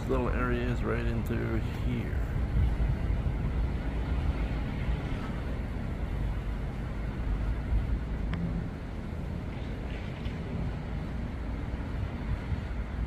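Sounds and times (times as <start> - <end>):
low rumble of road traffic: 0.0 - 13.0.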